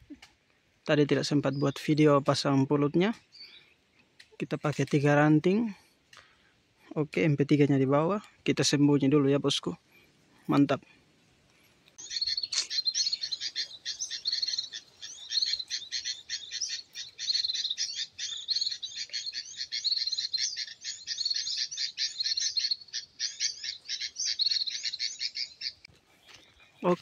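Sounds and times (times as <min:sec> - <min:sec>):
rapid high-pitched bird chirps: 0:12.0 - 0:27.0.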